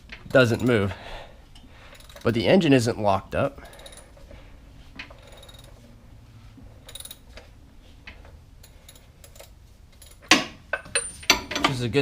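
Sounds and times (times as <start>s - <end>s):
ratchet wrench clicking: 1.9s - 2.3s, 3.6s - 4.1s, 5.0s - 5.8s, 6.8s - 7.2s, 8.6s - 10.3s.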